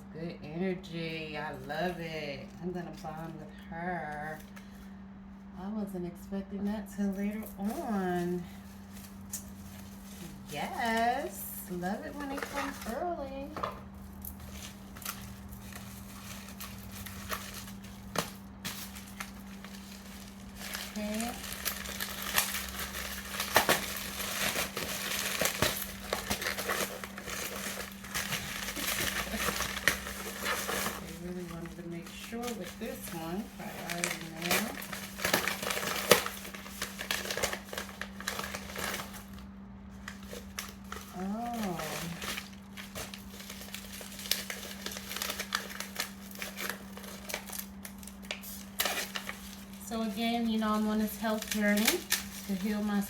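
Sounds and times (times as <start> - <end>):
low electrical hum: 0.0 - 53.0
packaging crinkling and rustling: 7.1 - 53.0
sharp crackles and clicks: 40.6 - 53.0.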